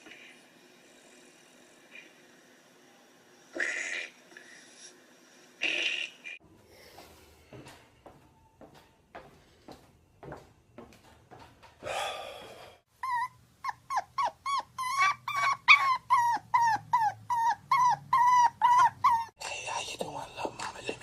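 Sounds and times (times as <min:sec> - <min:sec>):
dog whimpering: 0:13.0 - 0:19.4.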